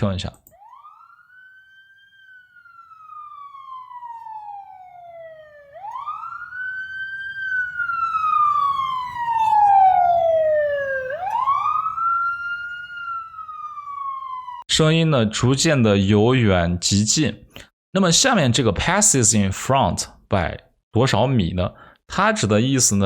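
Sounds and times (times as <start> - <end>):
police siren wailing: 0.4 - 14.7.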